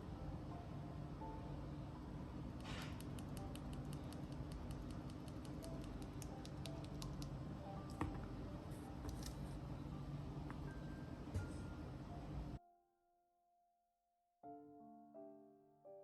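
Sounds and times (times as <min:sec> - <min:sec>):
mechanical keyboard typing: 0:02.9 - 0:07.4.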